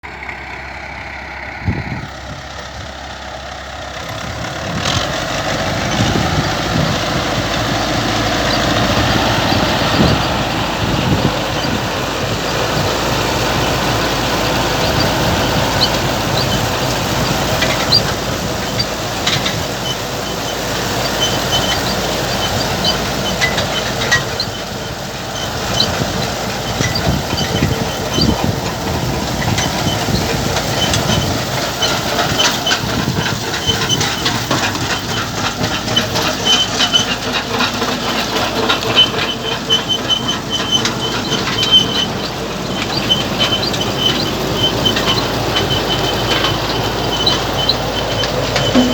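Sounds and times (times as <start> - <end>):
harvest machinery rattling: 0.0 - 48.9
high-pitched metallic squeaks: 4.1 - 48.9.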